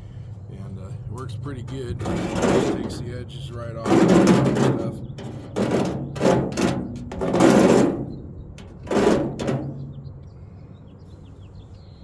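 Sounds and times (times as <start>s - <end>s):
deburring tool scraping metal edge: 1.6s - 10.1s.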